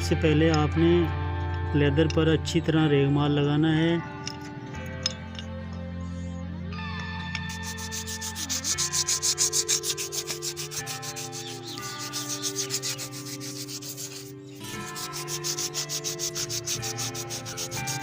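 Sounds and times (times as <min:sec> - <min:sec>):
sandpaper rubbing on brake lining: 0:07.5 - 0:18.0.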